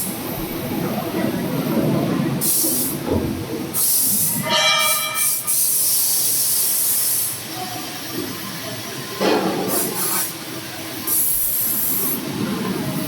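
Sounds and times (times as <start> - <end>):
loud air hiss: 2.4 - 3.0, 3.7 - 7.5, 9.5 - 12.3.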